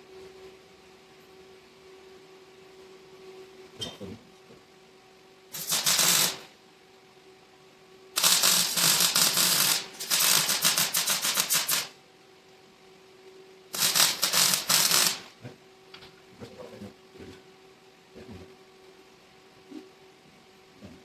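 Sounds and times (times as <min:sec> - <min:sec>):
faint steady hum: 0:00.0 - 0:21.0
welder arc crackling: 0:05.5 - 0:06.5, 0:08.2 - 0:12.0, 0:13.7 - 0:15.4.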